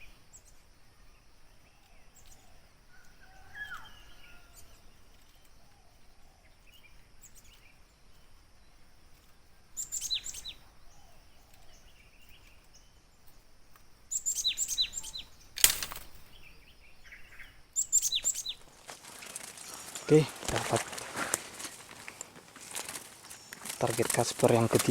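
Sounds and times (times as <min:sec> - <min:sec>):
birds chirping high: 0:00.0 - 0:24.9
loud rustle or flap: 0:18.7 - 0:24.9.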